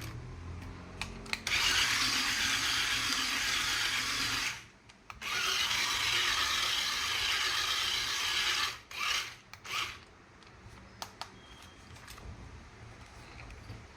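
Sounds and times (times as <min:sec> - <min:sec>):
rasping mechanical noise: 0:00.0 - 0:04.6.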